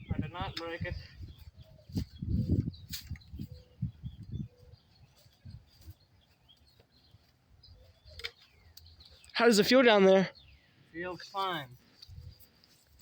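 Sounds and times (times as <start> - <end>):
faint bird chirps: 0.0 - 9.4.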